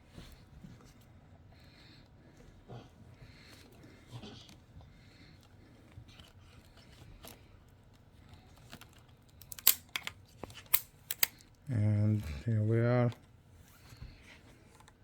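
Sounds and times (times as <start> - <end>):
sharp plastic clicks: 8.8 - 11.5.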